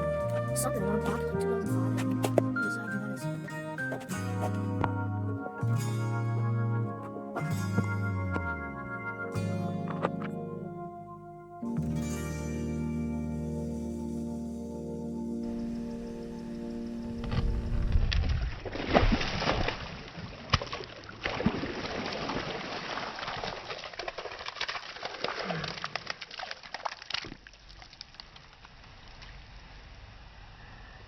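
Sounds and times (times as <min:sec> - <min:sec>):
water sloshing and splashing: 0:17.2 - 0:28.5.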